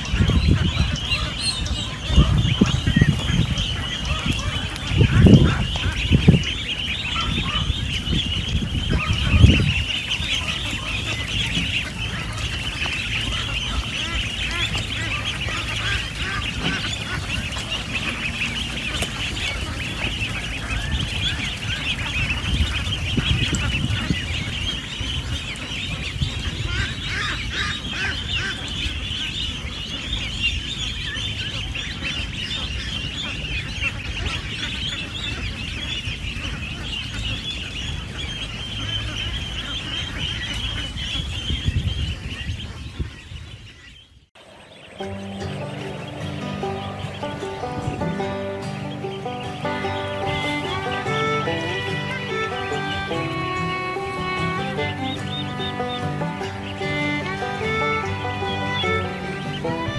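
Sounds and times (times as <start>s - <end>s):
chicks peeping: 0.0s - 59.9s.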